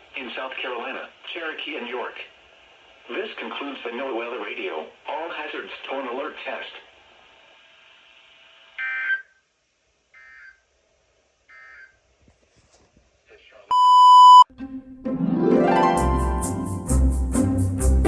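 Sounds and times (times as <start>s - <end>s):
loud electronic beep: 13.7s - 14.5s.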